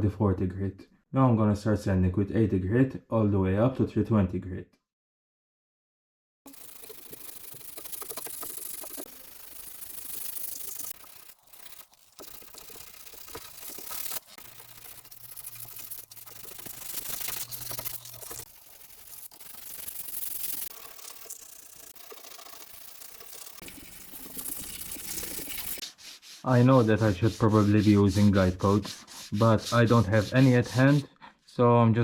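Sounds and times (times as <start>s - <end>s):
sandpaper rubbing on filler: 6.5s - 31.1s.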